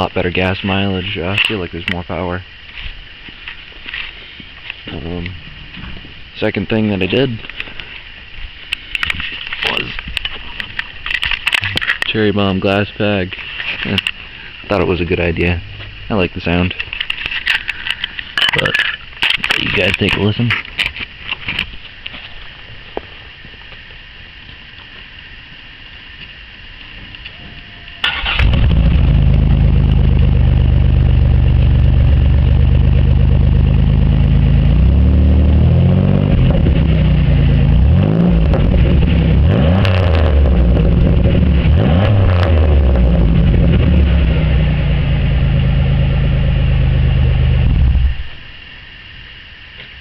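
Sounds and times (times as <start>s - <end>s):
car engine cranking and idling: 28.0s - 48.5s
engine revving: 28.1s - 48.2s.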